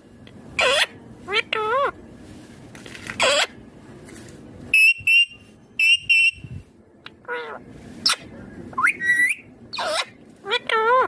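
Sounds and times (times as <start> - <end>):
parakeet wavering call: 0.6 - 1.9, 8.8 - 11.0
parakeet squawking: 0.6 - 2.0, 3.2 - 3.6, 7.2 - 11.0.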